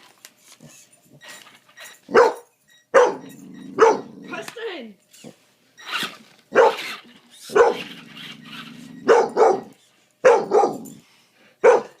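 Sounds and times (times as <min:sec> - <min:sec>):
dog growling low: 0:03.2 - 0:04.3, 0:07.8 - 0:09.1
small dog barking sharply: 0:11.6 - 0:12.0.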